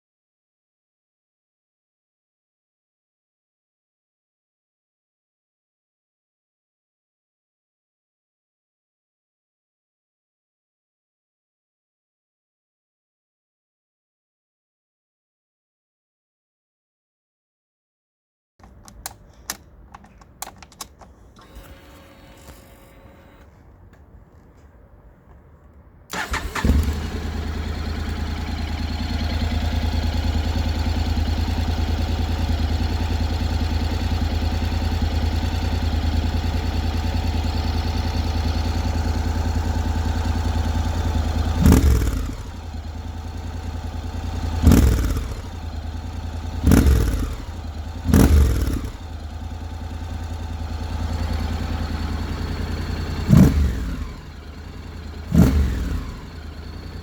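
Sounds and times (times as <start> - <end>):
motorcycle engine starting and idling: 18.6 - 24.4, 26.1 - 57.0
motorcycle throttle blips: 26.1 - 57.0.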